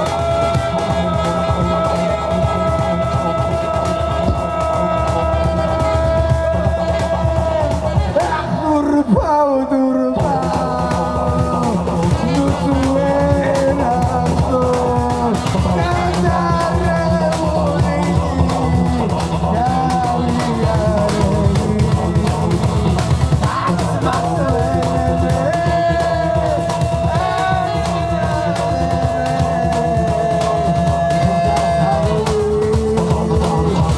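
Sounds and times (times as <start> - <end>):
dense drum beat: 0.0 - 9.4, 10.2 - 33.9
steady bass: 0.0 - 9.4, 10.1 - 33.9.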